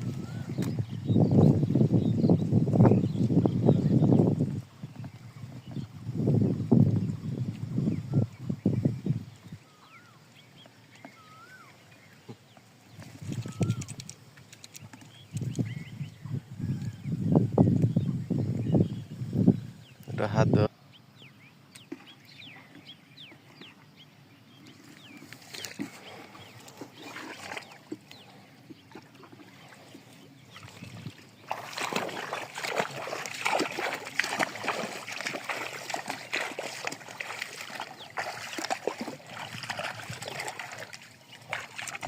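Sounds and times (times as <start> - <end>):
water splashing and sloshing: 9.0 - 16.2, 21.7 - 42.0.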